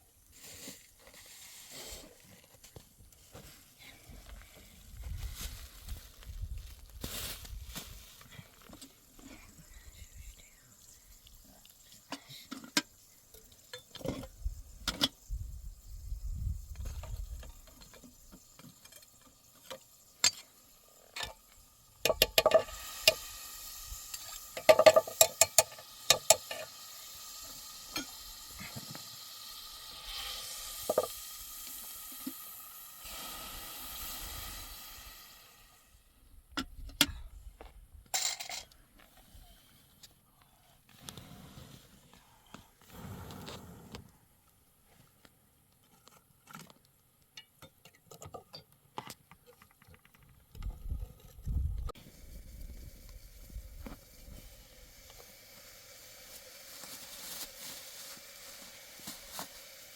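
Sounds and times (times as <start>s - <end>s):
food sizzling in a pan: 12.7s - 35.9s, 52.0s - 59.9s.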